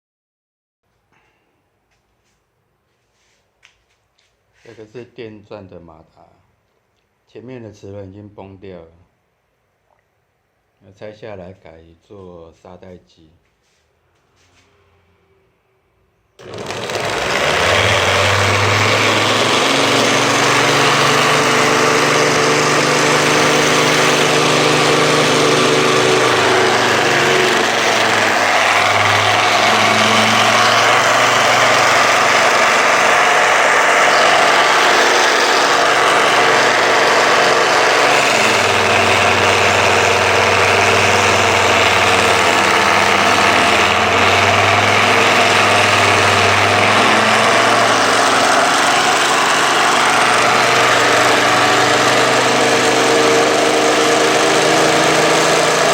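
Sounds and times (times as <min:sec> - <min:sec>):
electric drill motor whirring: 0:16.4 - 0:55.9.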